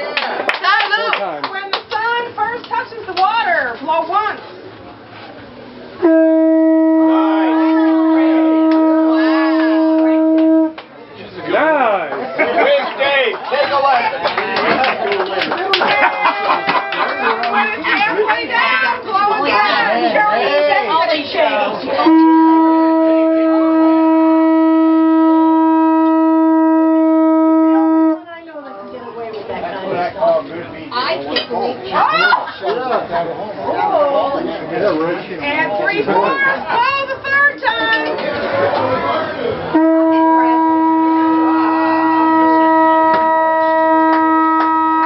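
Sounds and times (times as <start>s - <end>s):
crowd chatter: 0.0s - 45.0s
conch shell horn note: 6.0s - 10.8s, 22.0s - 28.4s, 39.7s - 45.0s.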